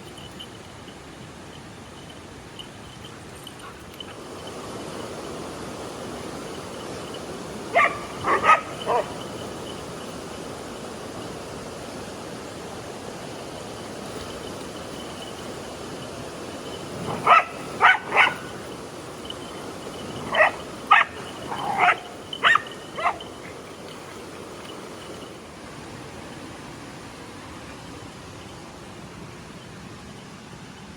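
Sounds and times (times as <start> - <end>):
river water rushing: 0.0 - 30.9
dog barking: 7.7 - 9.2, 17.1 - 18.6, 20.2 - 23.5.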